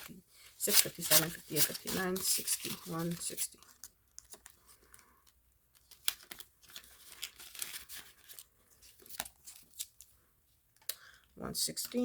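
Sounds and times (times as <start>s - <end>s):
paper envelopes crinkling: 0.0s - 10.1s
banknotes rustling being counted: 0.6s - 3.6s.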